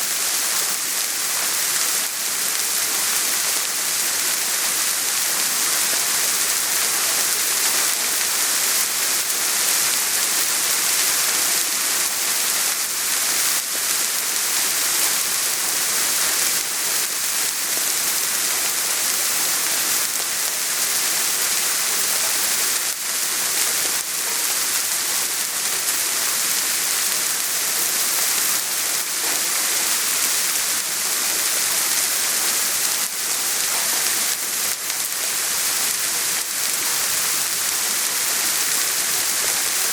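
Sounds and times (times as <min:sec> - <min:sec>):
soft rain falling: 0:00.0 - 0:39.9.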